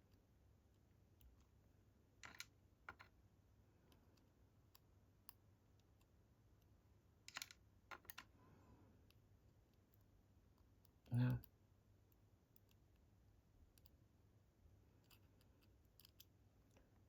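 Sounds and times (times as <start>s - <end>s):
padlock parts clicking: 15.0s - 16.8s.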